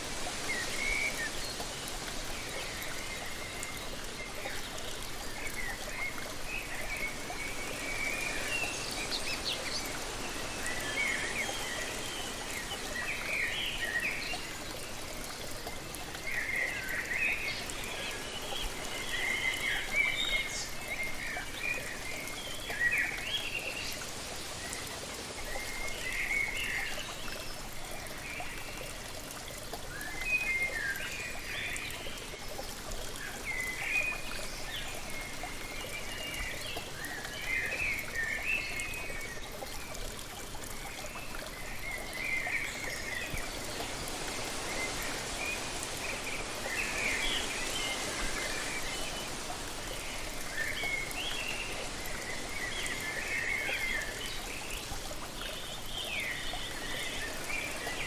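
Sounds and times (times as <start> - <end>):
waterfall rushing: 42.8 - 54.5.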